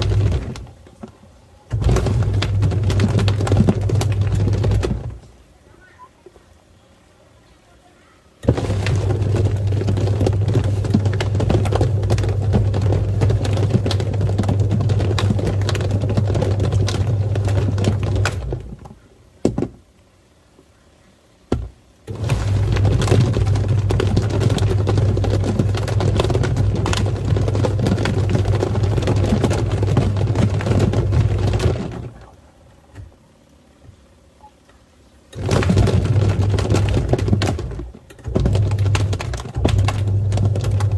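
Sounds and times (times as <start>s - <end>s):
water churning in tub: 0.0s - 0.8s, 1.7s - 5.2s, 8.4s - 18.8s, 22.1s - 32.6s, 35.3s - 40.9s
toys knocking and rattling: 0.0s - 5.3s, 8.4s - 19.8s, 21.5s - 32.3s, 35.3s - 40.9s
washing machine motor humming: 0.0s - 5.8s, 8.4s - 19.0s, 21.5s - 40.9s.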